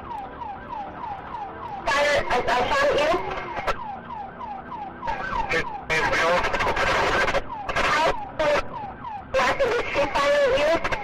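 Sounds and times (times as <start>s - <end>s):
police siren yelping: 0.0s - 11.0s.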